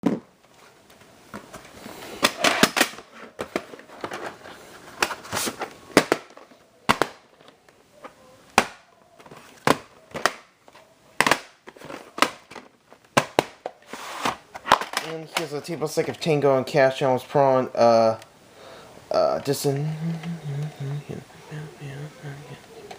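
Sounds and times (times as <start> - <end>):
plastic tape case clicks and rustling: 11.2 - 15.5.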